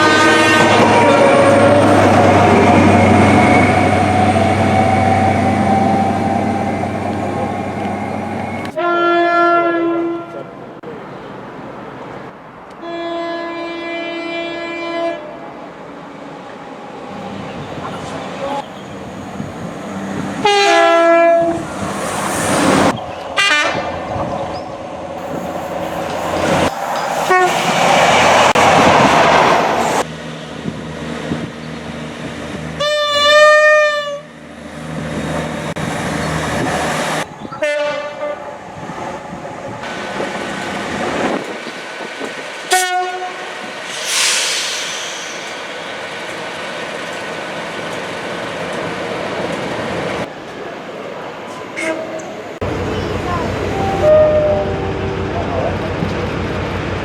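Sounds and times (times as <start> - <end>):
train horn blasts: 0.0 - 1.8, 8.8 - 10.5, 12.8 - 15.4, 20.4 - 21.7, 23.4 - 24.0, 26.2 - 27.7, 32.8 - 34.3, 37.5 - 38.5, 42.7 - 43.5, 51.8 - 52.2, 53.7 - 55.4
trains rushing past on rails: 0.0 - 8.8, 10.3 - 57.0.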